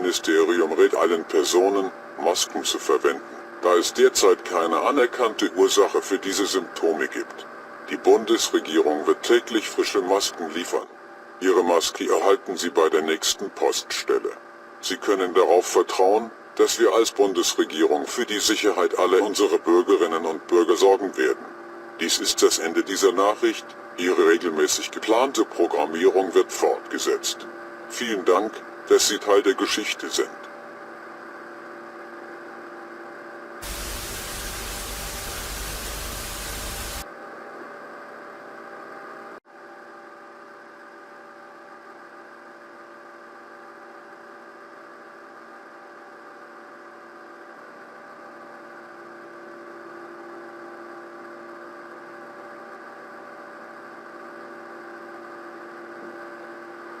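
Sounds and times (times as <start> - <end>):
electrical hum: 0.0 - 57.0
white-noise static: 33.6 - 37.0.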